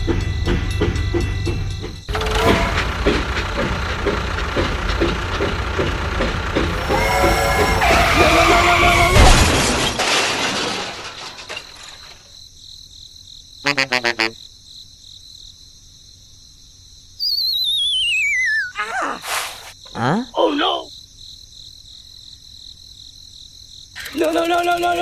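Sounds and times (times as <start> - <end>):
loud crash with breaking: 2.1 - 12.3
falling wavering whistle: 17.2 - 18.8
stutter of pitched beeps: 17.2 - 18.8.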